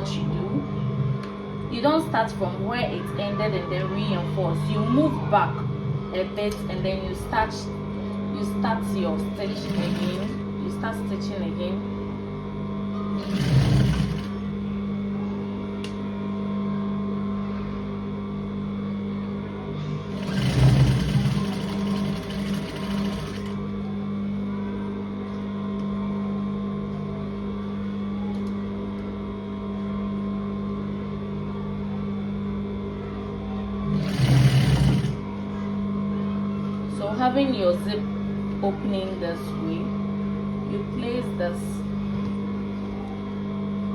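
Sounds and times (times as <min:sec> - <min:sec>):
sewing machine stitching: 0:09.3 - 0:10.4, 0:13.2 - 0:14.4, 0:20.1 - 0:23.6, 0:33.9 - 0:35.2.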